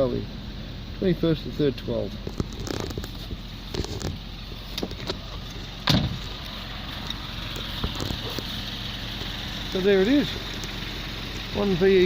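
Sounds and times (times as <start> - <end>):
car engine idling: 0.0 - 12.0
loud thump: 5.8 - 6.2.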